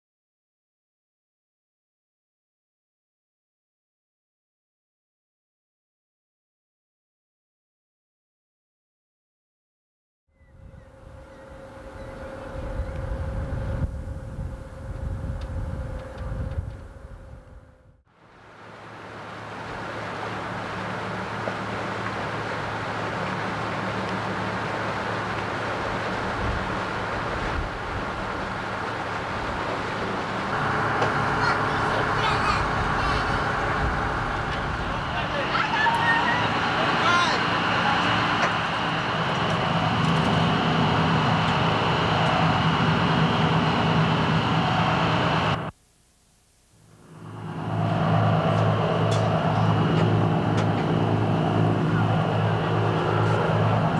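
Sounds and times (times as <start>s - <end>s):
rushing wind and water: 10.6s - 45.7s, 47.0s - 53.9s
engine running steadily: 10.6s - 45.8s, 46.8s - 53.9s.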